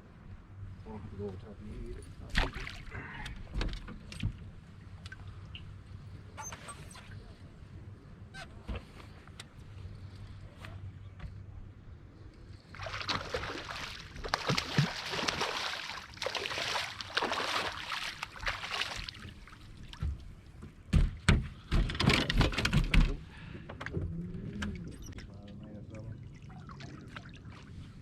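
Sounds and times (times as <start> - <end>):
knocks and thumps against boat: 3.2 - 4.5, 20.0 - 24.7
fish splashing in water: 12.7 - 20.0.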